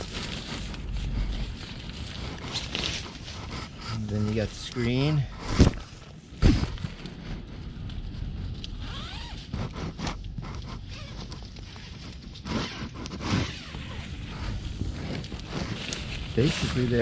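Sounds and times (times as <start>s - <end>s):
zipper being pulled: 0.0s - 4.0s, 8.6s - 17.0s.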